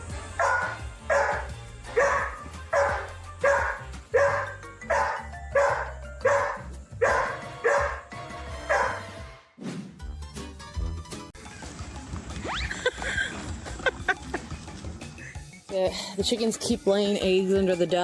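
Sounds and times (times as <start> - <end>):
background music with bass: 0.0 - 18.0
dog barking: 0.3 - 9.2.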